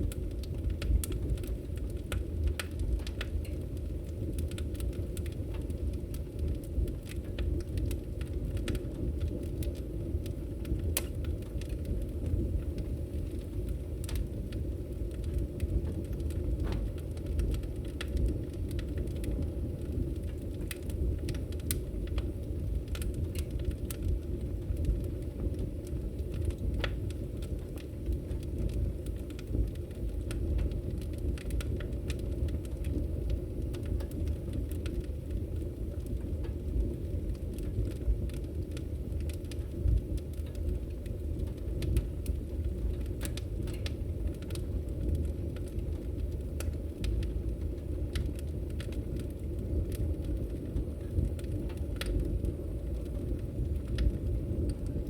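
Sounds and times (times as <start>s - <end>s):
fire crackling: 0.0s - 55.0s.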